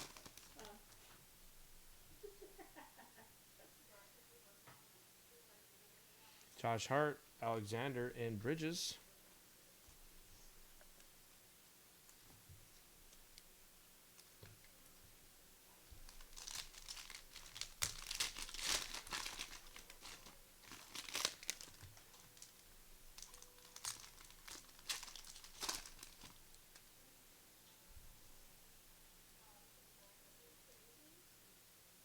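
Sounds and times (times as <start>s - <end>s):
plastic wrapper tearing and crinkling: 0.0s - 0.8s, 16.0s - 26.9s.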